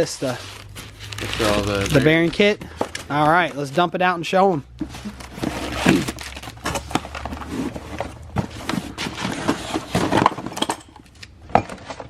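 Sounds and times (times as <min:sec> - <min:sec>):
packaging rustling: 0:00.0 - 0:03.8, 0:04.8 - 0:10.6
small boxes tumbling onto surface: 0:04.8 - 0:12.0.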